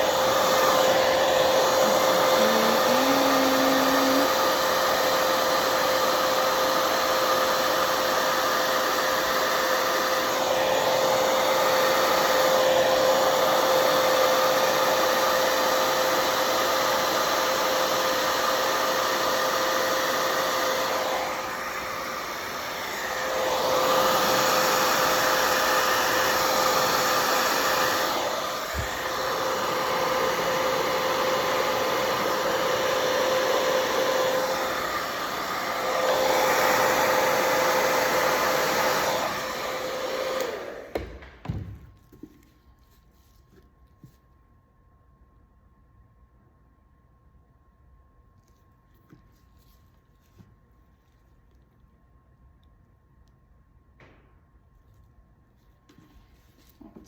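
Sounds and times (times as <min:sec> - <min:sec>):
hair dryer running: 0:00.0 - 0:41.7.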